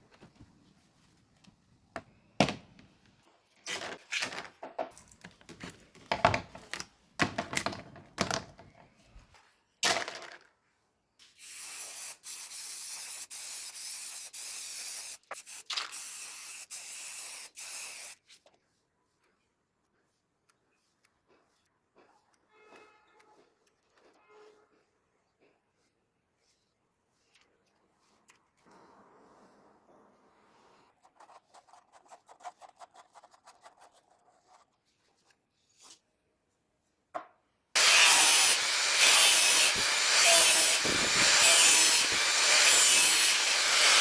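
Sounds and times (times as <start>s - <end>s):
knocks and rubbing of parts: 3.8s - 8.9s
aerosol spray can hissing: 11.4s - 18.2s, 37.8s - 44.0s.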